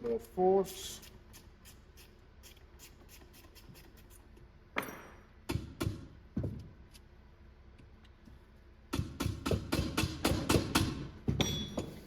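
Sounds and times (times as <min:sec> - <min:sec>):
sharp metallic knocks with ring: 0:09.2 - 0:12.0.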